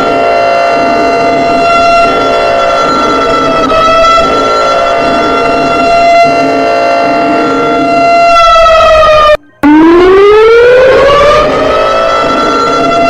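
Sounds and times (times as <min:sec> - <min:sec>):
civil defense siren: 0:00.0 - 0:13.0.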